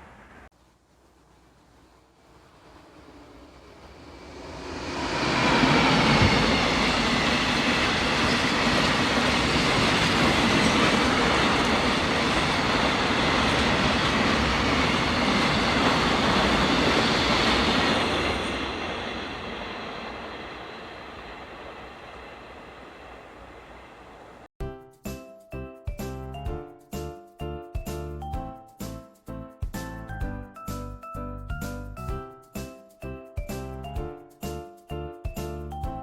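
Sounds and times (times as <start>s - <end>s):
train passing on track: 0.0s - 0.5s, 1.2s - 24.5s.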